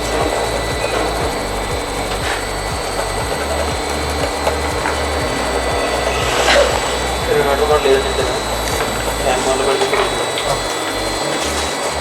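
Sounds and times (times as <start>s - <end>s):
air conditioner compressor humming: 0.0s - 12.0s.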